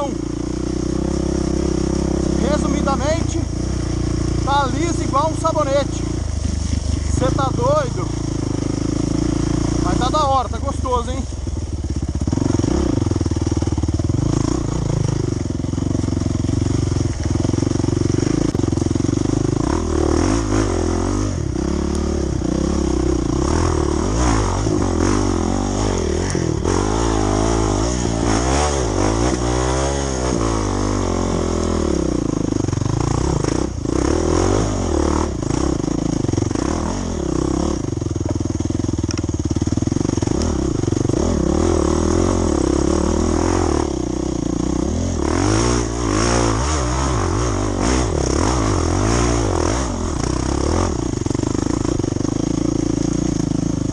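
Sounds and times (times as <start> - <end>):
dirt bike engine revving: 0.0 - 53.9.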